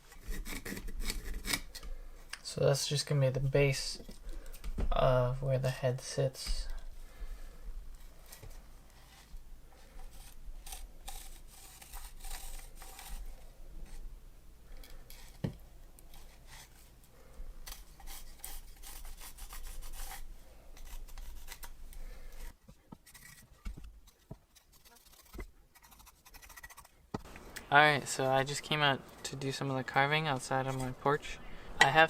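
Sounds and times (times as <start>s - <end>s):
pencil scratching on wood: 17.9s - 21.7s, 24.8s - 27.0s.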